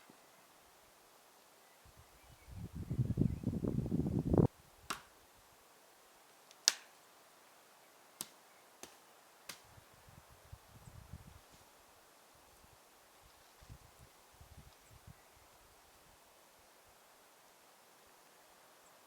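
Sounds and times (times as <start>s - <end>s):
sharp snaps: 4.9s - 5.2s, 6.5s - 7.0s, 8.2s - 9.7s.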